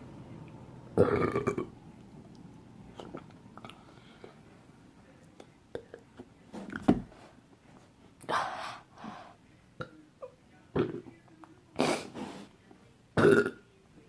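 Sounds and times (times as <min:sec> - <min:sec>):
boy breathing heavily: 0:08.3 - 0:09.4.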